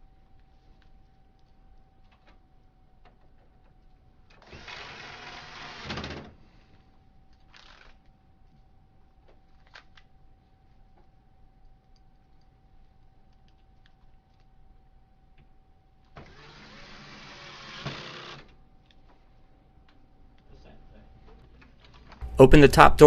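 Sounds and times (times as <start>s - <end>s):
electric screwdriver motor: 4.4s - 6.0s, 16.2s - 18.6s.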